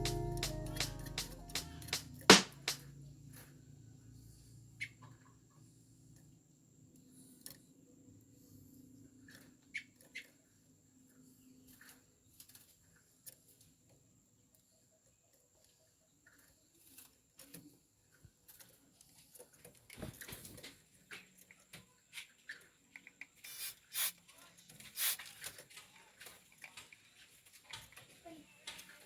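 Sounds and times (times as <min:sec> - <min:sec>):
birds rustling and scratching: 0:18.4 - 0:29.0.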